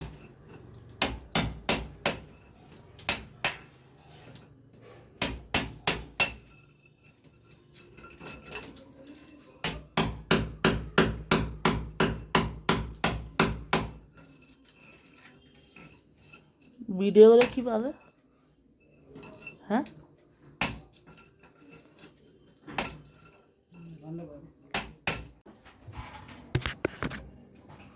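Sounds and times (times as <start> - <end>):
hammer striking metal: 0.0 - 2.5, 3.1 - 3.7, 5.2 - 6.6, 9.6 - 14.1, 20.6 - 21.3, 22.7 - 23.4, 24.7 - 25.4.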